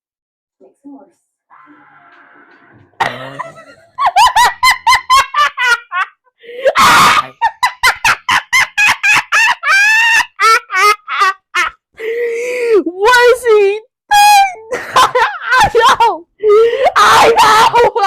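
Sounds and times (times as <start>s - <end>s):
person laughing hard: 3.0s - 11.8s
breathy shriek: 6.5s - 7.4s.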